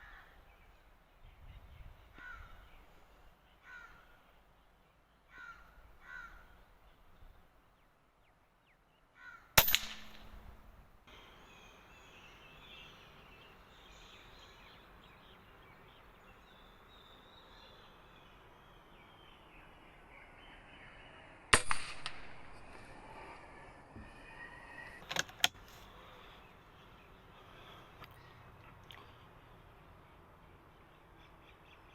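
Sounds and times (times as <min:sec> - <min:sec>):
crows cawing: 0:00.0 - 0:00.4, 0:02.1 - 0:02.6, 0:03.6 - 0:04.1, 0:05.3 - 0:06.6, 0:09.2 - 0:09.6
air rifle shots: 0:09.6 - 0:10.7, 0:21.5 - 0:22.6.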